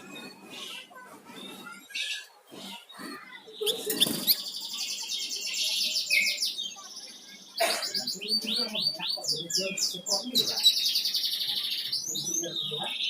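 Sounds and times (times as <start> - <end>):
songbird singing trills: 3.5 - 13.0.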